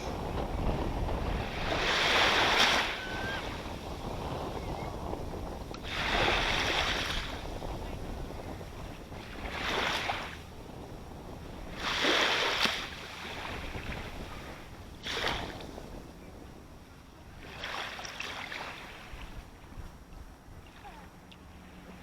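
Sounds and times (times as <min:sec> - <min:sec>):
low surf rumble: 0:00.0 - 0:11.9
ocean waves breaking: 0:00.0 - 0:22.0.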